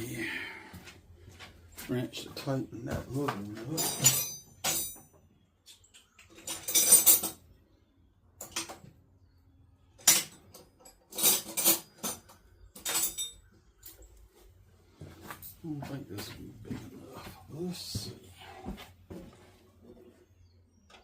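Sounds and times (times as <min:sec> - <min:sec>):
metal hand tools clinking: 0:03.8 - 0:05.1, 0:06.4 - 0:07.4.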